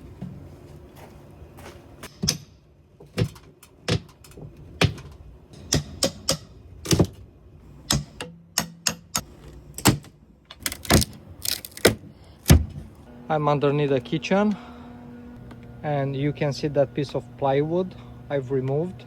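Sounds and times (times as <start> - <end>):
sharp knocks and clunks: 2.1 - 7.2.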